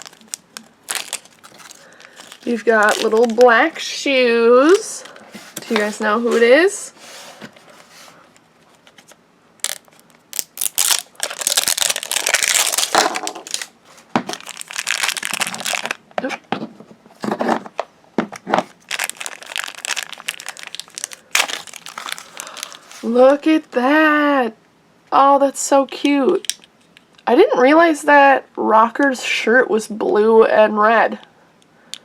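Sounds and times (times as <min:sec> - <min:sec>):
plastic wrapping tearing and crumpling: 0:00.0 - 0:03.9, 0:09.6 - 0:16.0, 0:18.7 - 0:23.2.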